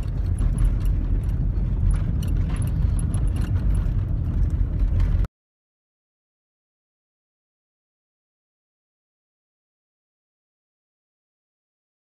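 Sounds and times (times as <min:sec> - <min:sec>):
car interior engine and road rumble: 0:00.0 - 0:05.3.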